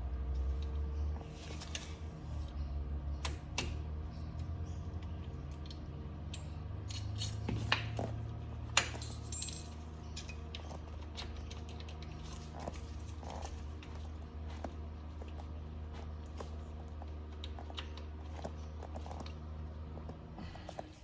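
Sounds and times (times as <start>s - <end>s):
steady low hum: 0.0s - 21.0s
metallic clinks and taps: 5.5s - 12.8s.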